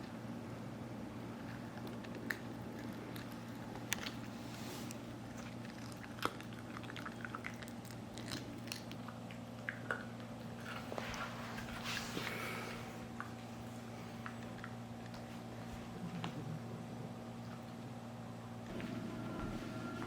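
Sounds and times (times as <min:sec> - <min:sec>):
low steady hum: 0:00.0 - 0:20.0
dog gnawing on a hard chew: 0:01.3 - 0:12.1, 0:14.1 - 0:15.7.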